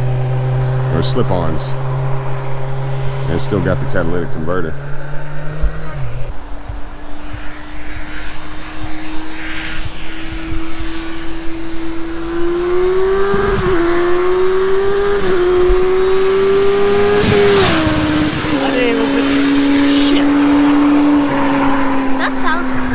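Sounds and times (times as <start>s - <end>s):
motorcycle accelerating past: 0.0s - 22.9s
motorcycle upshifting: 4.7s - 22.2s.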